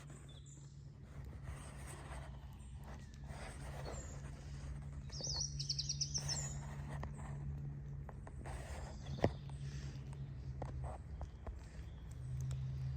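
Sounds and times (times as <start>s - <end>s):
birds chirping: 0.0s - 12.9s
steady low hum: 0.0s - 12.9s
bird trill: 5.0s - 6.6s.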